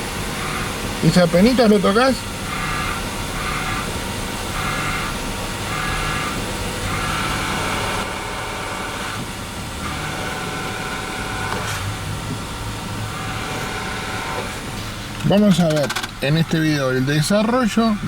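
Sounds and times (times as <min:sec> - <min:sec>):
car engine idling: 0:00.0 - 0:18.0
high clutch bearing whine: 0:00.0 - 0:18.0.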